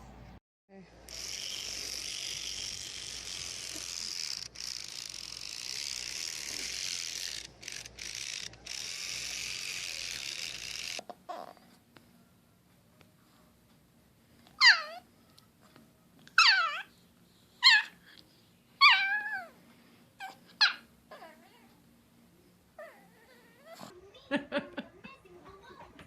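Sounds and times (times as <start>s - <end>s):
puppy yelping: 14.6s - 15.0s, 16.4s - 16.9s, 17.6s - 18.0s, 18.8s - 19.5s, 20.2s - 21.4s.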